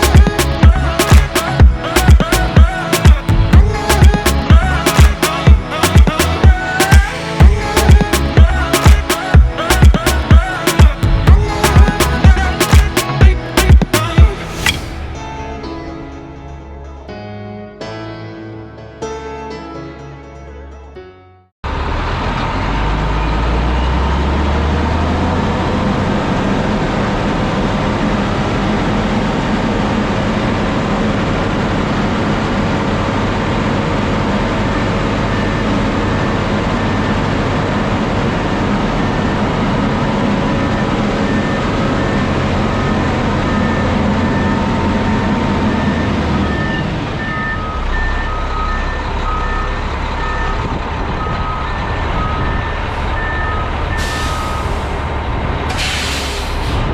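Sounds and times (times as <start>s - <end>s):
diesel truck engine running: 0.0s - 17.1s, 21.6s - 56.9s
backup alarm beeping: 40.7s - 54.9s.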